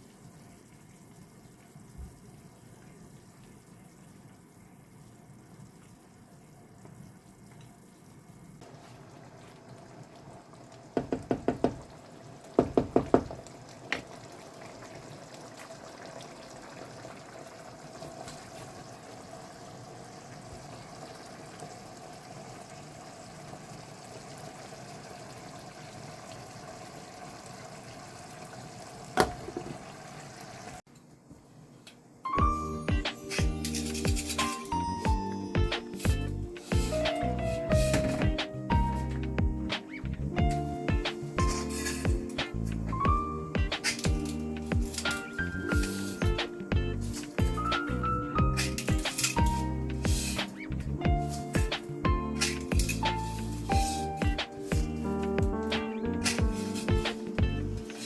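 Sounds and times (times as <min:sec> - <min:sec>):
sharp kitchen knocks: 0:11.0 - 0:11.9, 0:12.6 - 0:13.4, 0:37.8 - 0:38.4.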